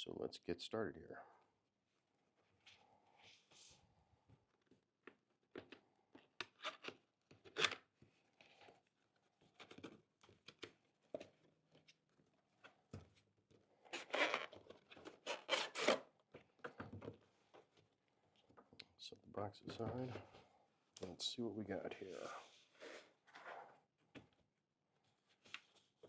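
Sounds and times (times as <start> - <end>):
packaging rubbing and tearing: 13.9 - 16.0.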